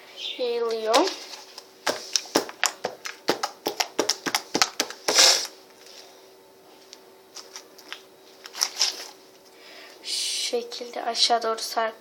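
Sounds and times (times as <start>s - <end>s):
slime clicking and squelching: 1.9s - 5.3s.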